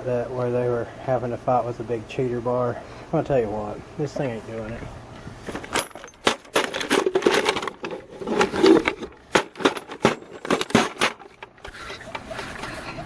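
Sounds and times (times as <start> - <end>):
sharp knocks and clicks clattering: 5.5 - 12.3.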